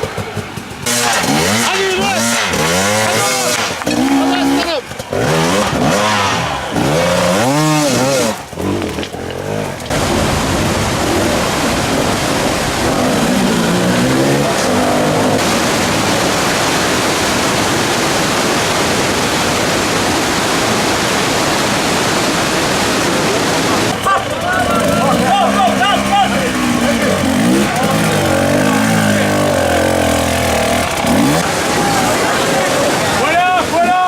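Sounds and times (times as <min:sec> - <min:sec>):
motorcycle engine revving: 0:00.0 - 0:33.8
loud rushing noise: 0:09.9 - 0:34.0.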